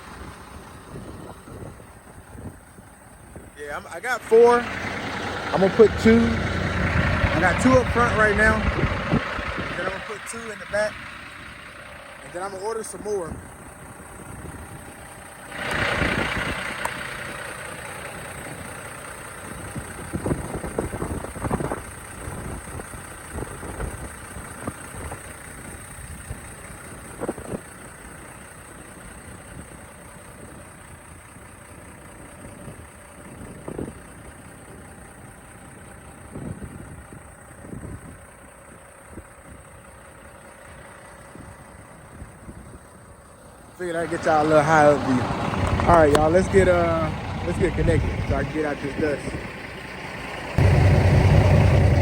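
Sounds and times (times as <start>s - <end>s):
truck engine idling: 0.0s - 52.0s.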